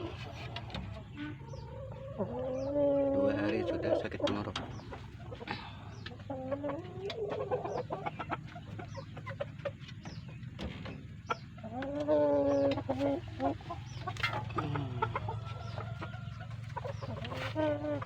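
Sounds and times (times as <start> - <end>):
chickens clucking: 0.0 - 18.0
drawn-out chicken call: 4.9 - 9.8, 11.3 - 18.0.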